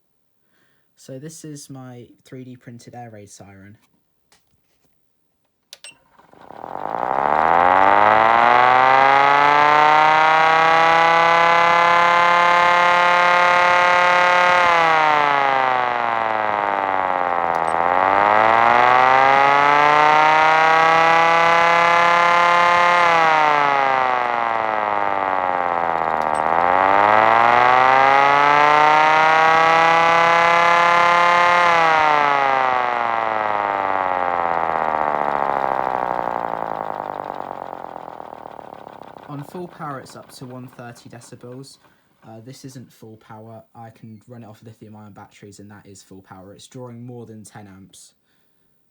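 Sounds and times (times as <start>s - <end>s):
electric siren wailing: 6.3s - 41.5s.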